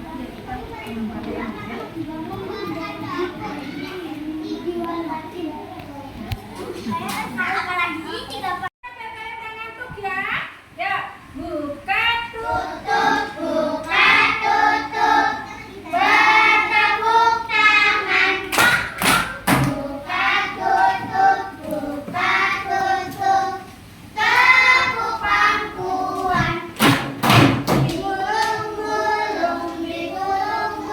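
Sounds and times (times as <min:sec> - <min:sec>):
children singing together: 0:12.3 - 0:30.9.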